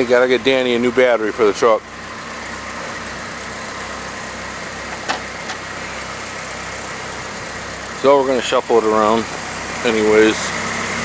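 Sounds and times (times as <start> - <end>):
vehicle engine idling: 0.0 - 11.0.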